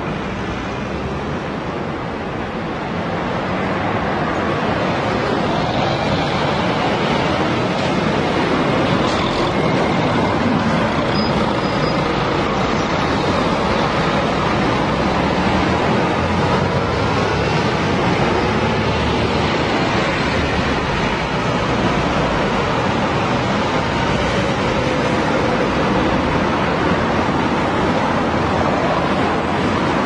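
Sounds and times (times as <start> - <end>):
dense road traffic: 0.0 - 30.0.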